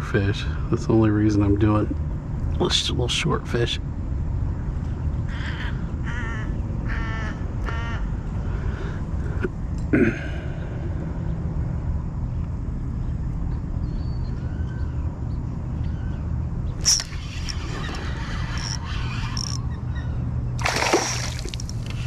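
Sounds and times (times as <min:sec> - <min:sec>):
bird rolling calls: 0:16.7 - 0:19.7, 0:20.6 - 0:22.0.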